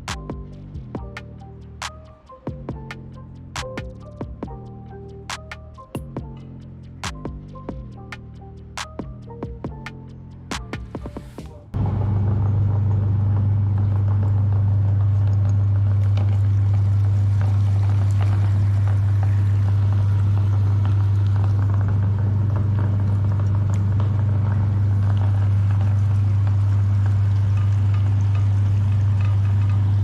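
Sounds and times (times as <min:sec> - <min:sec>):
meat grinder motor humming: 0:12.4 - 0:30.0.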